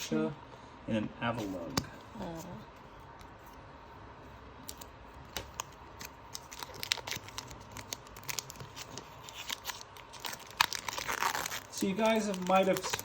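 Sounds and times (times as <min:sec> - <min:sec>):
foil wrapper crinkling and tearing: 0:05.5 - 0:13.0.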